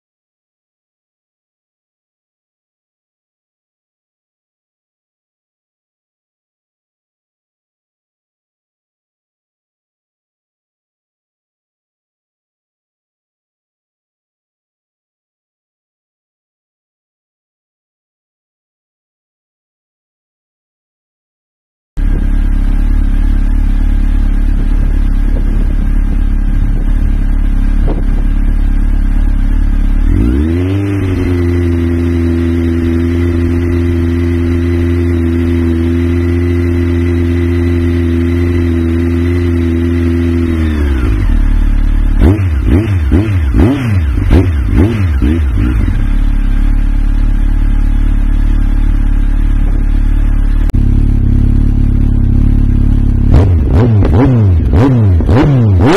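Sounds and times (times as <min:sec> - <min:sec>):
motorcycle engine revving: 0:22.0 - 0:55.9
quick throttle blips: 0:47.8 - 0:55.9.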